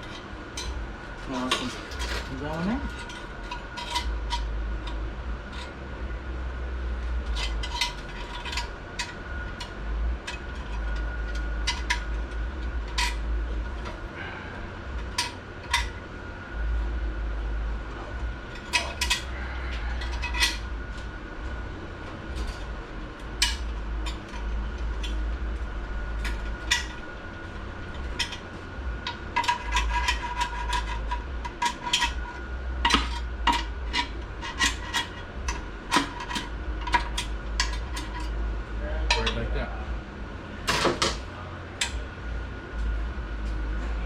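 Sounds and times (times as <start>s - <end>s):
metal parts clinking: 0.0s - 5.7s, 7.2s - 14.0s, 18.5s - 20.7s, 22.3s - 25.3s, 26.1s - 27.1s, 27.8s - 38.4s
steady low hum: 0.0s - 44.0s.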